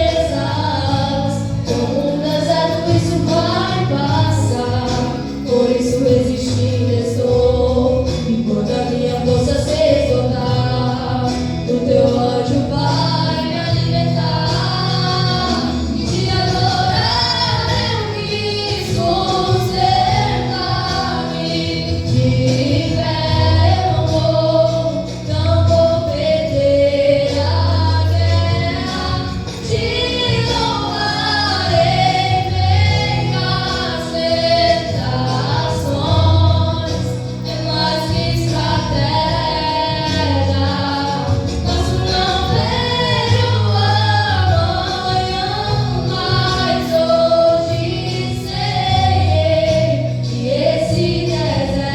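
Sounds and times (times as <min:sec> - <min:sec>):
instrumental backing with bass: 0:00.0 - 0:51.9
women singing worship song: 0:00.0 - 0:51.9.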